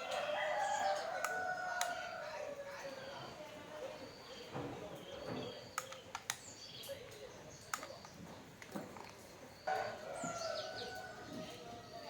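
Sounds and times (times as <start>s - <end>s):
birds chirping: 0.0s - 12.0s
sharp clicks and taps: 5.7s - 6.5s.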